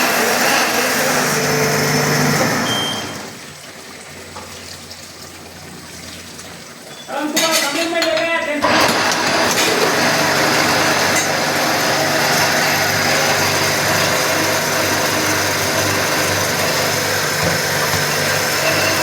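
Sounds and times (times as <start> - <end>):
machine motor hum and whirr: 0.0 - 3.4, 8.6 - 19.0.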